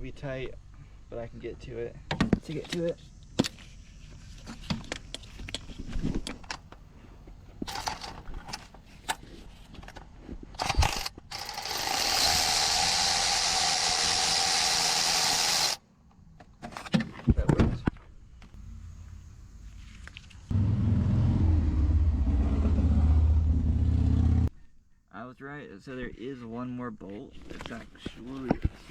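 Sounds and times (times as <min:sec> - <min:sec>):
power tool running: 0:10.6 - 0:15.8
ratchet wrench clicking: 0:10.6 - 0:15.8.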